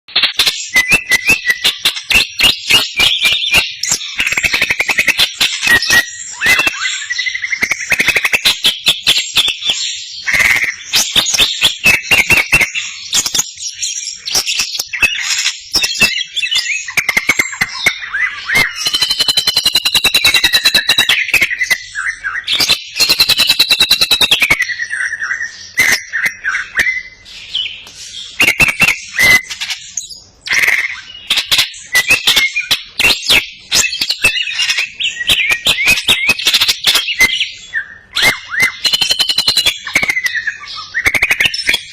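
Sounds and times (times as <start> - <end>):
bird singing whistled notes: 0.1 - 41.9
bird rattling trill: 18.6 - 21.8.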